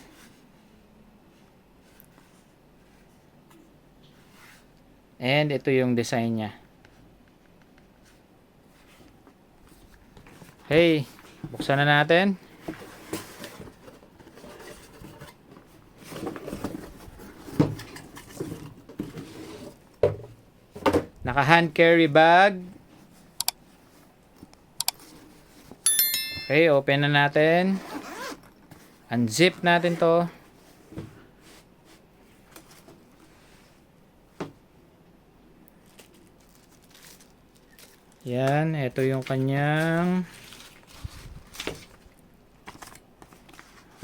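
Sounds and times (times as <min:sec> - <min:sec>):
packaging scraping and rustling: 0:12.4 - 0:19.9, 0:35.8 - 0:38.4, 0:39.0 - 0:44.0
bag rustling: 0:27.8 - 0:28.9.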